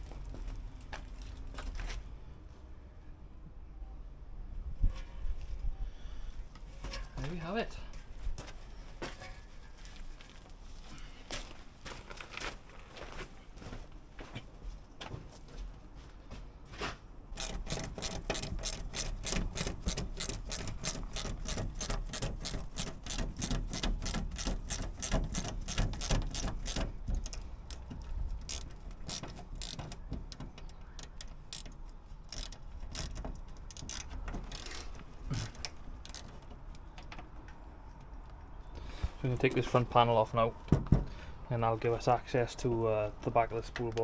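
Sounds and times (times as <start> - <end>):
socket ratchet clicking: 17.4 - 36.9.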